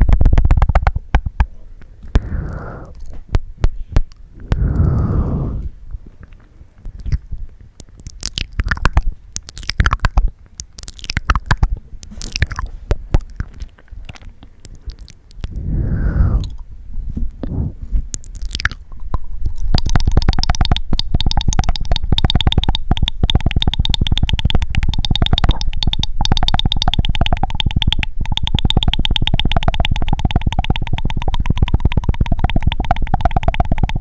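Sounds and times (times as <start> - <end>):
rapid mouth clicks: 0.0 - 3.2, 4.0 - 16.7, 17.4 - 34.0
mouth smacking: 1.5 - 3.2, 4.1 - 16.7, 17.3 - 34.0
tongue clicks: 2.1 - 3.1, 4.1 - 16.7, 17.4 - 34.0.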